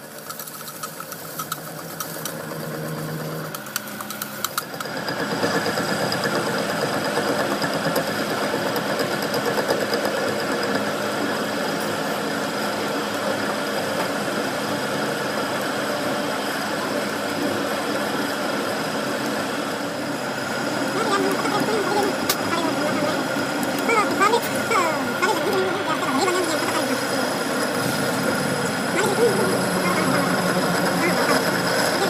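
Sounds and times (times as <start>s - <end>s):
machine humming: 0.0s - 32.0s.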